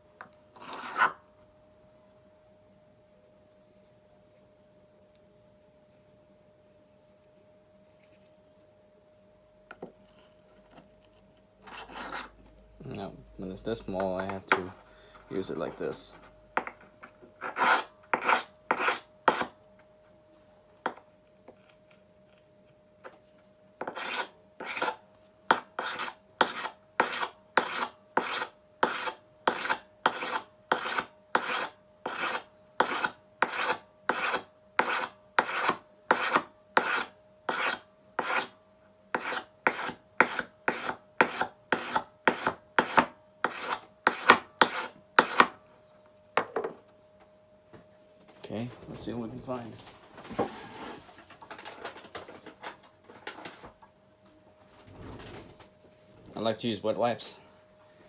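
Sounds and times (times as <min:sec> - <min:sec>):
faint steady hum: 0:00.0 - 0:58.0
steel blade scraping on sharpener: 0:00.6 - 0:01.2, 0:11.6 - 0:12.4, 0:23.9 - 0:25.0, 0:25.8 - 0:38.5, 0:39.2 - 0:45.5.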